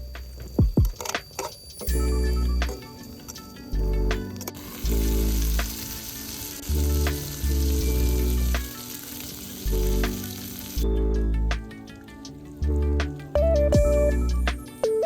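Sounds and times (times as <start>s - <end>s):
music with pulsing bass: 1.9s - 2.9s, 3.7s - 5.8s, 6.7s - 8.8s, 9.7s - 15.0s
food sizzling: 2.6s - 10.9s.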